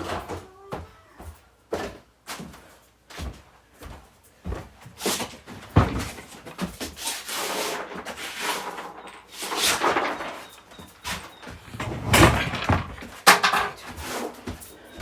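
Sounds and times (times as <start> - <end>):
rustling and shuffling: 0.0 - 15.0
knocks and thumps indoors: 5.2 - 7.0, 9.0 - 15.0.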